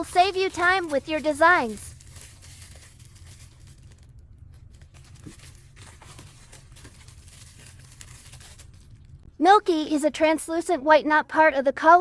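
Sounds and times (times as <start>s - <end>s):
packaging crinkling and rustling: 0.0s - 9.2s.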